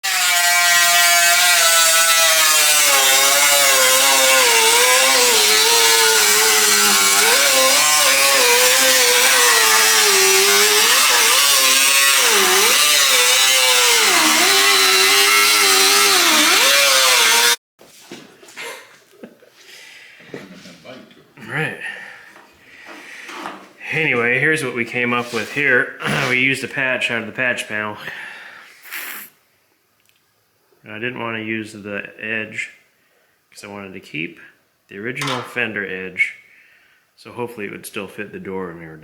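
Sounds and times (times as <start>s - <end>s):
power tool whining: 0.0s - 17.6s
dense hiss: 28.0s - 29.4s.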